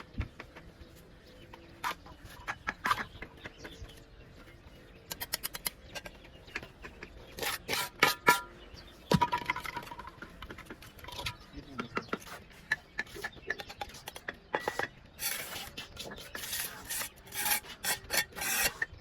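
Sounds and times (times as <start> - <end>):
trowel clicks and scrapes on brick: 5.1 - 8.5, 11.0 - 19.0.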